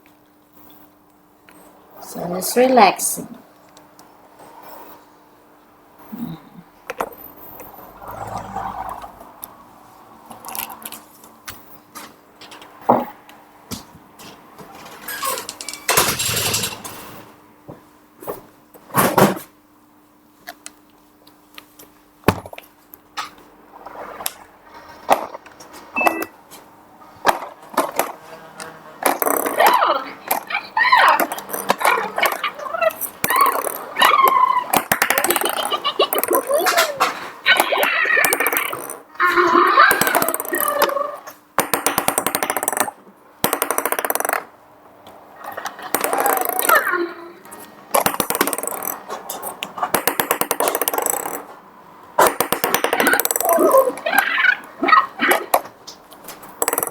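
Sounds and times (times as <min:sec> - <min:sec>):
faint electric hum: 0:00.0 - 0:41.6
toy mechanism clicks and knocks: 0:29.1 - 0:39.0, 0:39.9 - 0:41.0, 0:41.6 - 0:44.5, 0:45.5 - 0:46.9, 0:47.6 - 0:51.5, 0:52.2 - 0:54.1, 0:56.6 - 0:56.9.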